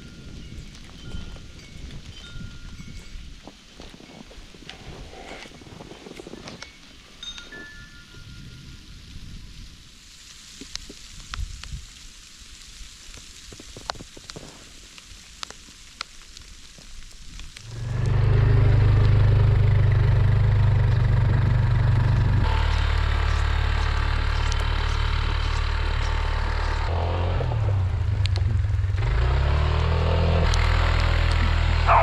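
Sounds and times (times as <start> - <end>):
vehicle engine running: 17.7 - 32.0.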